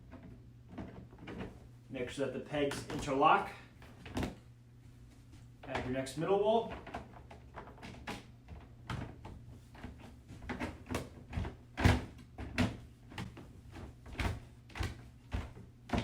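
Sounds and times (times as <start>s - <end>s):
plastic panels clacking and knocking: 0.0s - 1.6s, 6.6s - 16.0s.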